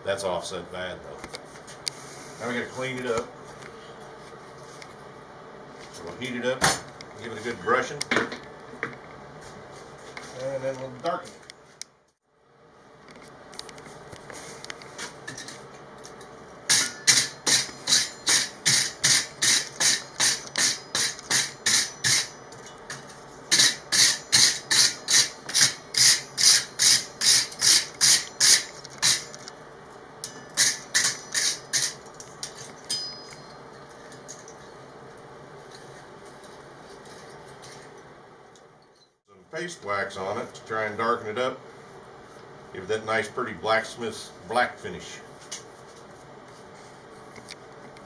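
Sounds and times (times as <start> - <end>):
wire brush scrubbing steel: 23.5 - 29.3.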